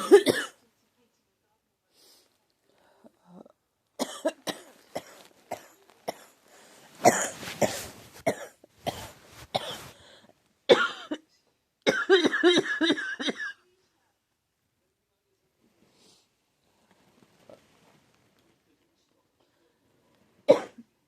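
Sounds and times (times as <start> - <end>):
person coughing: 0.0 - 0.6, 7.0 - 10.0, 20.5 - 20.8.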